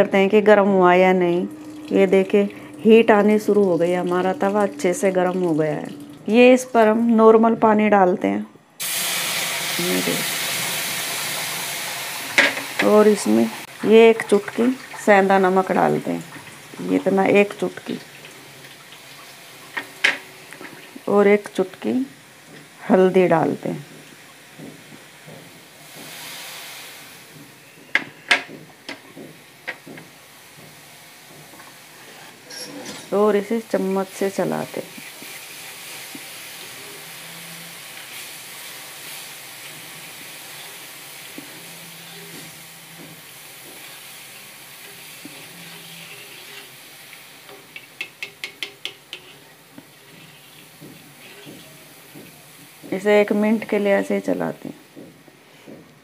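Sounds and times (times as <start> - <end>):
water sizzling on hot iron: 0.0 - 7.0, 8.8 - 55.8
spoon knocking on pan: 27.9 - 31.5, 47.5 - 49.5, 50.1 - 52.4.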